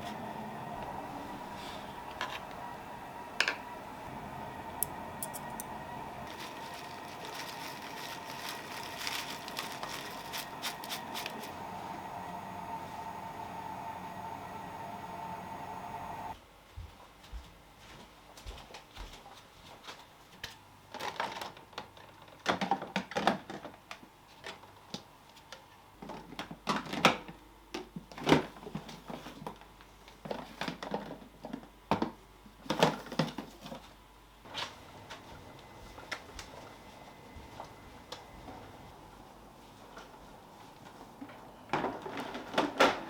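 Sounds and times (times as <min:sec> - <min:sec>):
food packaging being handled: 0:05.2 - 0:11.7.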